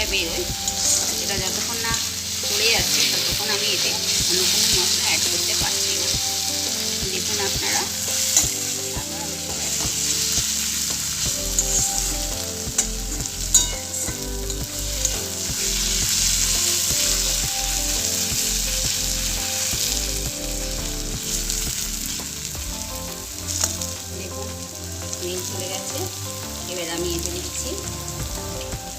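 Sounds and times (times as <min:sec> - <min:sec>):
garlic sizzling in oil: 0:00.0 - 0:28.9.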